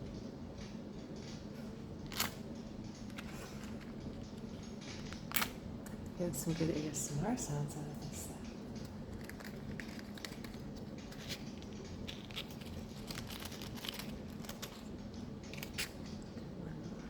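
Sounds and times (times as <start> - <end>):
burning wood crackling: 8.3 - 16.8.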